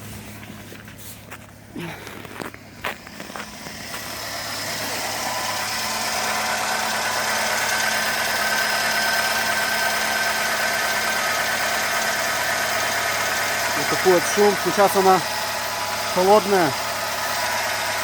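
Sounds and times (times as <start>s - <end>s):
car engine idling: 0.0s - 18.0s
knocking inside engine: 2.5s - 18.0s.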